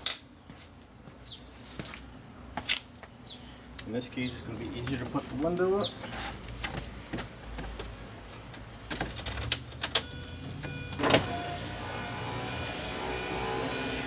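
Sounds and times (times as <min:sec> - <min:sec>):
power window motor running: 0:10.4 - 0:14.0.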